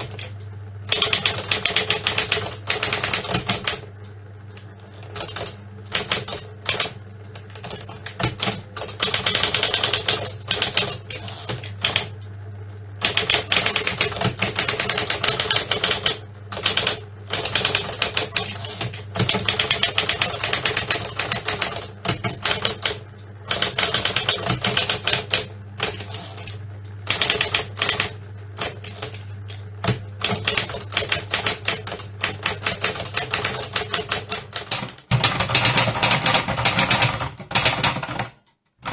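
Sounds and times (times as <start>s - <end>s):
steady low hum: 0.0s - 32.4s
typewriter typing: 0.9s - 3.8s, 5.1s - 12.1s, 13.0s - 38.9s.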